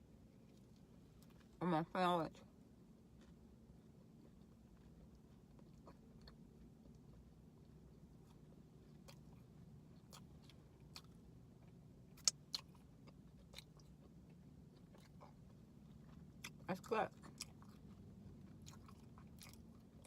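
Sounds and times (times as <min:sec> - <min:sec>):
low room hum: 0:00.0 - 0:20.0
chewing with wet mouth clicks: 0:03.1 - 0:20.0.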